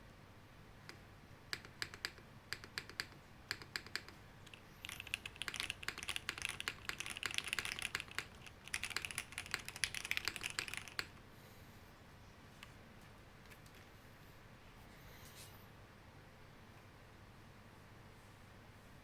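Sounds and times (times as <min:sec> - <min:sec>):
mechanical keyboard typing: 0:01.5 - 0:11.2.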